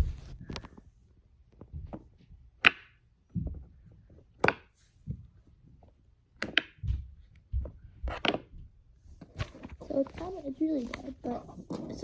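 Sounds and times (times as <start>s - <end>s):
soft dull thuds: 0.0s - 0.7s.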